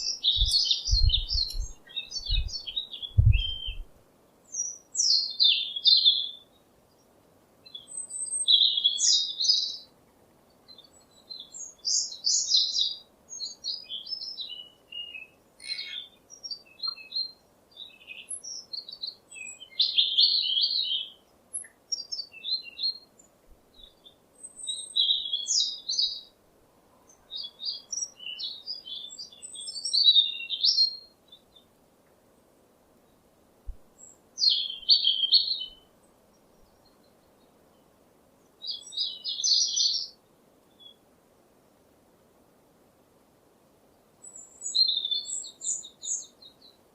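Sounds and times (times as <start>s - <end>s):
bird chirping and trilling: 0.0s - 3.9s, 15.6s - 17.2s
faint steady hiss: 0.0s - 46.9s.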